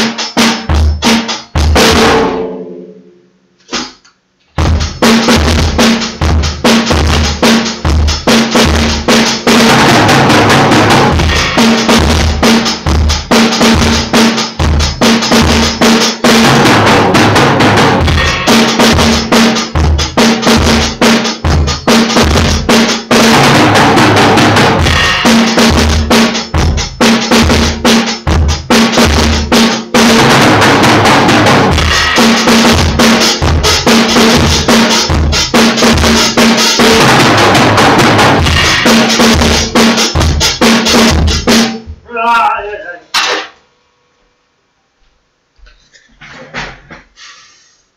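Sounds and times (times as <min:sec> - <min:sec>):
drum kit beat: 0:00.0 - 0:03.0, 0:03.6 - 0:04.0, 0:04.6 - 0:43.6.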